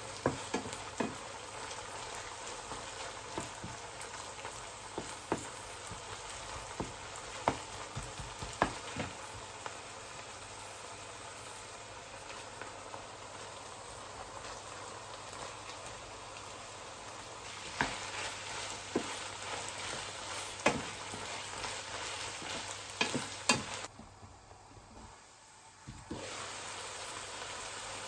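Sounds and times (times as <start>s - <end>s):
food sizzling in a frying pan: 0.0s - 23.9s, 25.0s - 28.0s
utensil knocking against pan: 0.3s - 1.2s, 5.0s - 9.2s, 20.6s - 21.3s, 23.0s - 23.8s.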